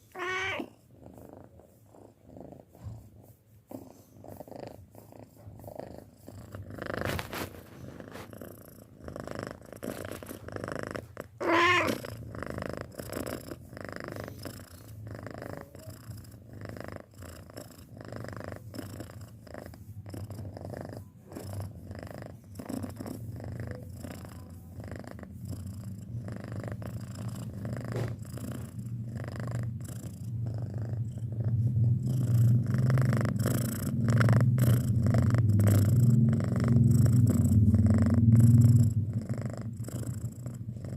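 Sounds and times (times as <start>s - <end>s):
cat wavering call: 0.0s - 0.7s
cat purring: 0.0s - 40.9s.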